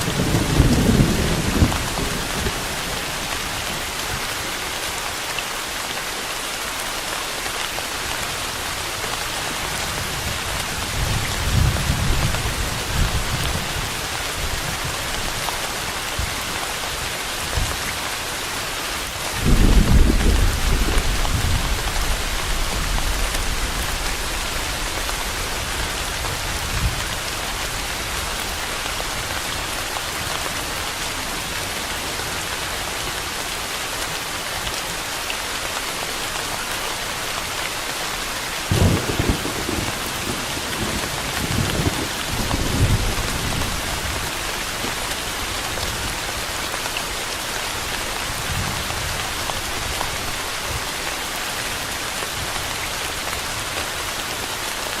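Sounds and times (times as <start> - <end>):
thunder rumbling: 0.0 - 3.1, 19.3 - 28.9, 38.7 - 45.0
steady rain hissing: 0.0 - 55.0.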